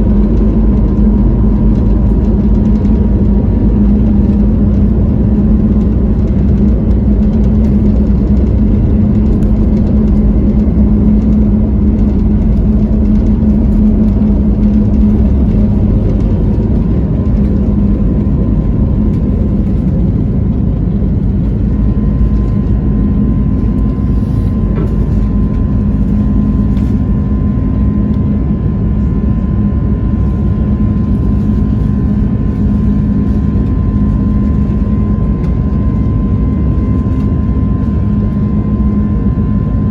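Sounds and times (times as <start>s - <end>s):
jet engines in cabin: 0.0s - 39.9s.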